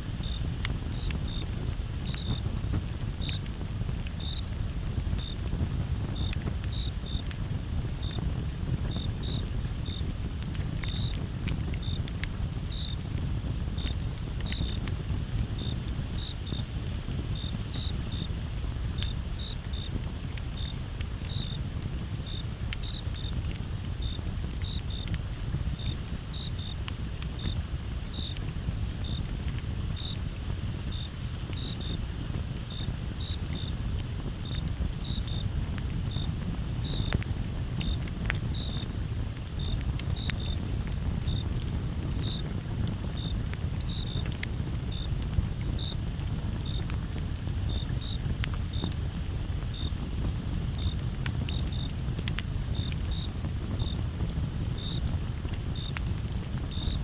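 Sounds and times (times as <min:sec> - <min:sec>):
campfire crackling: 0:00.0 - 0:57.0
crickets chirping: 0:00.0 - 0:57.0
high cricket chorus: 0:00.0 - 0:57.0.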